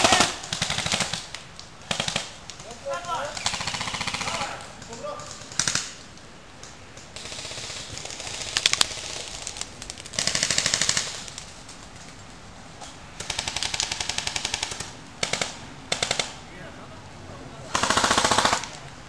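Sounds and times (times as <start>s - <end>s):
airsoft guns firing full-auto bursts: 0.0s - 6.0s, 7.1s - 11.4s, 13.2s - 16.4s, 17.7s - 18.8s.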